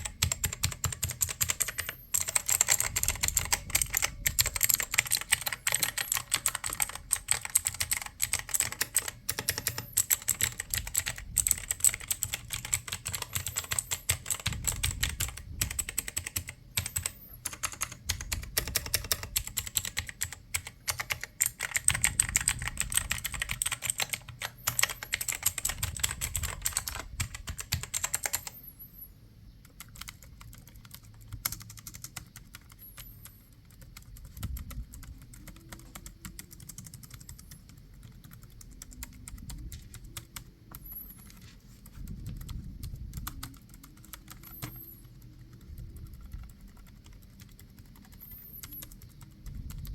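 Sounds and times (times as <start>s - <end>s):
typing on computer keyboard: 0.0s - 29.0s, 29.6s - 49.9s.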